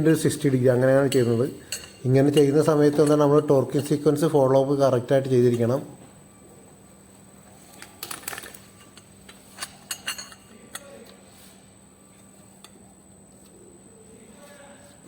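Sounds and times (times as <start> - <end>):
metal tools clinking: 1.0 - 3.2, 7.8 - 11.0.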